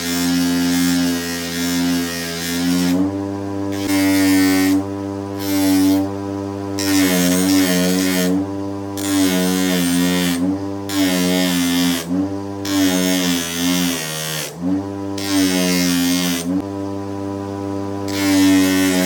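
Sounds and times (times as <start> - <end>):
power tool motor humming: 0.0 - 19.0.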